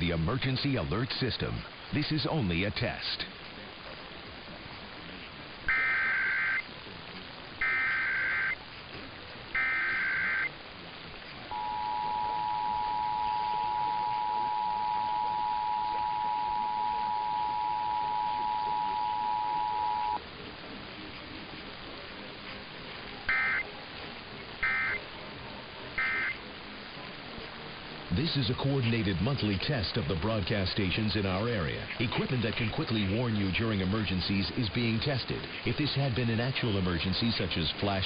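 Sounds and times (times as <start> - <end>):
warbling digital data bursts: 0.0 - 20.3, 23.1 - 26.7
steady hiss: 0.0 - 38.0
two-tone attention signal: 5.7 - 6.7, 7.6 - 8.6, 9.5 - 10.5, 11.5 - 20.2, 23.3 - 23.7, 24.6 - 25.0, 26.0 - 26.4.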